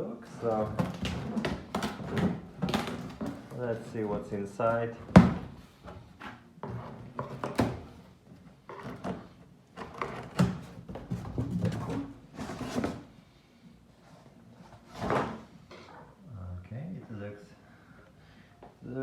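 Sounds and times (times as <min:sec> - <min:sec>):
cardboard scraping and rustling: 0:00.3 - 0:13.2, 0:14.6 - 0:15.5.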